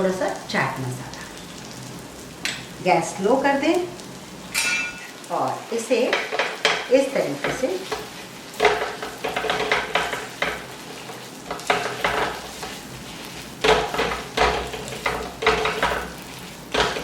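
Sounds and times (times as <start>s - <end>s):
dosa sizzling on griddle: 0.0s - 17.0s
spatula scraping on iron griddle: 7.4s - 17.0s.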